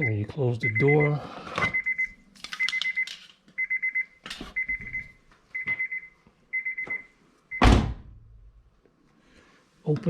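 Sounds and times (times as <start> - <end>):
pulsing car warning chime: 0.0 - 1.2.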